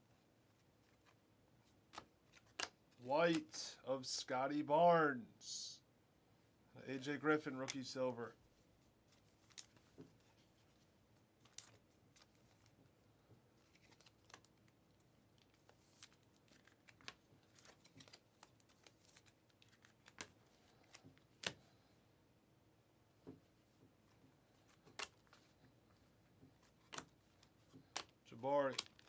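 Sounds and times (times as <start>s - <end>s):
trading cards clicking and sliding: 1.9s - 3.6s, 26.6s - 29.0s.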